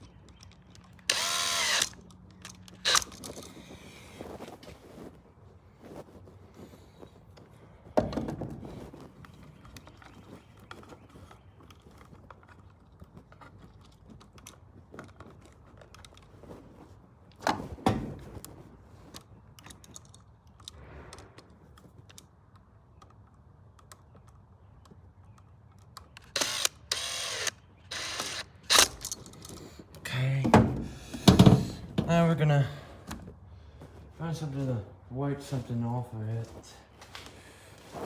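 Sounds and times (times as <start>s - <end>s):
small clicks and knocks: 0.0s - 1.2s, 9.2s - 16.6s
scraping rustles: 2.6s - 19.9s, 28.9s - 38.0s.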